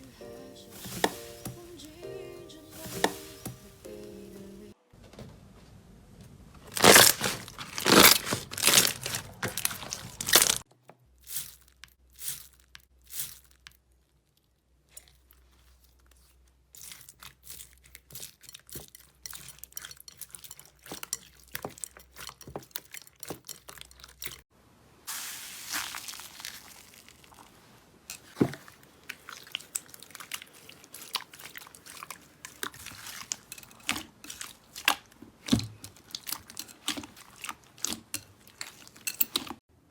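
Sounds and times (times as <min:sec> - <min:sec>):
slime crunching and crackling: 0:06.7 - 0:10.7, 0:25.1 - 0:39.6.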